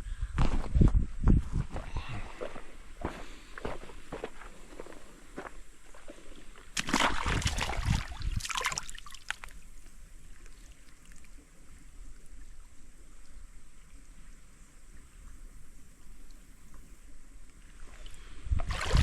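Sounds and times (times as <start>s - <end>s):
footsteps wading through water: 2.3s - 9.6s, 17.8s - 19.0s.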